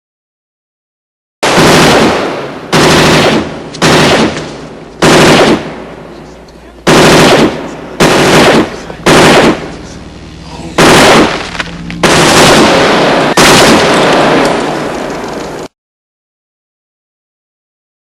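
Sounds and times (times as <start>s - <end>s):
machine gun bursts: 1.4s - 5.7s, 6.8s - 10.0s, 10.8s - 15.7s.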